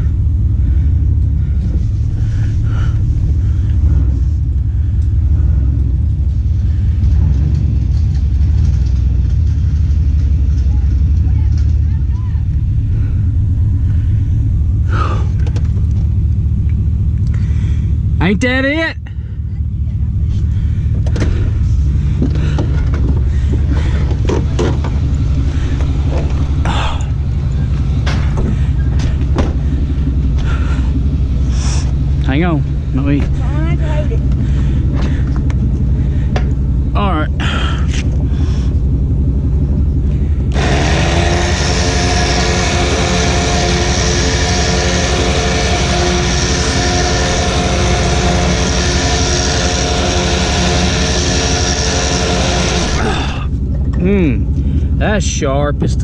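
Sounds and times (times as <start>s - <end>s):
engine idling: 0.0s - 56.0s
motorised machine running loudly: 20.5s - 54.9s.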